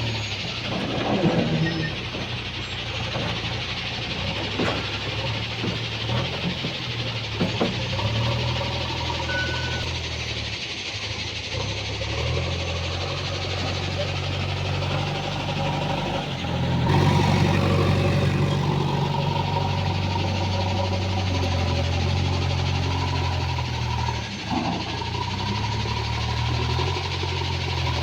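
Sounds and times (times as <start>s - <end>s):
diesel engine under load: 0.0s - 28.0s.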